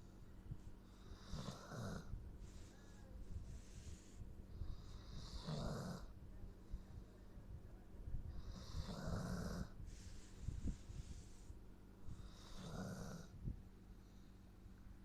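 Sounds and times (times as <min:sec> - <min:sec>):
soft airy breath: 0:00.0 - 0:15.0
dog snoring: 0:01.0 - 0:02.6, 0:04.6 - 0:06.2, 0:08.4 - 0:10.1, 0:12.1 - 0:13.4.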